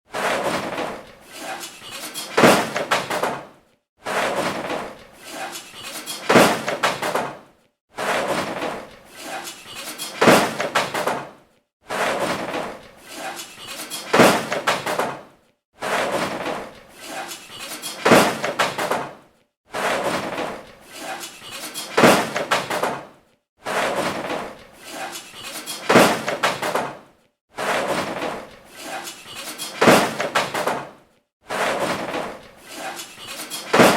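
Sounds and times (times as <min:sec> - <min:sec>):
metal and containers clattering: 0:00.2 - 0:03.4, 0:31.6 - 0:33.9
garbage and junk crashing: 0:33.2 - 0:33.9.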